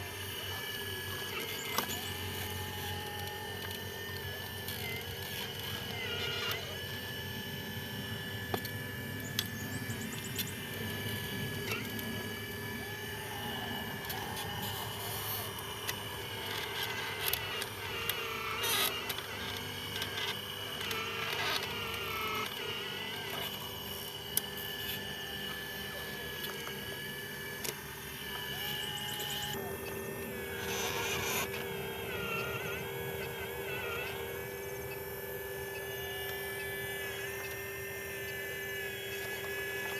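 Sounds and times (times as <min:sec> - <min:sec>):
small electric motors whining: 0:00.0 - 0:39.9
scattered clicks: 0:08.5 - 0:12.4, 0:13.0 - 0:39.9.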